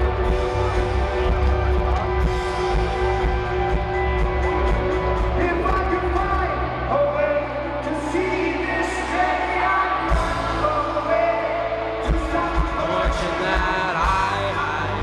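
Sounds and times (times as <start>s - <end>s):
live rock band playing: 0.0s - 15.0s
person singing: 5.3s - 15.0s.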